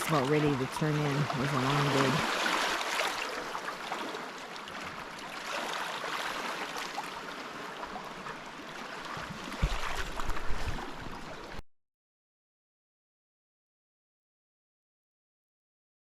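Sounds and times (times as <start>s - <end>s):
waves lapping on rocky shore: 0.0s - 11.6s.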